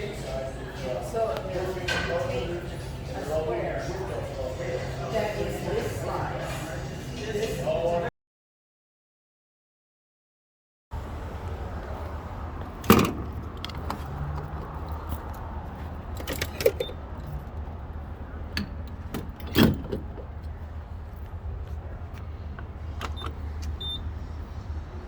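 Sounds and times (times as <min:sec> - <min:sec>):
car engine rumble: 0:11.0 - 0:25.0
clicks and jingles: 0:16.1 - 0:17.5.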